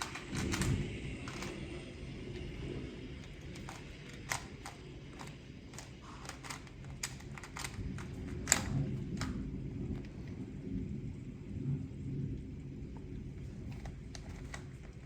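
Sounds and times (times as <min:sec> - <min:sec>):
sharp irregular clicks: 0:00.0 - 0:02.5, 0:03.2 - 0:10.1
steady low rumble: 0:00.0 - 0:15.0.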